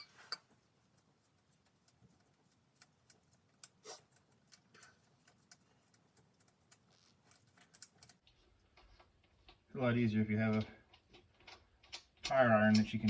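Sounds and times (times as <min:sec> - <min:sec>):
metallic clicks and taps: 0:10.3 - 0:13.0.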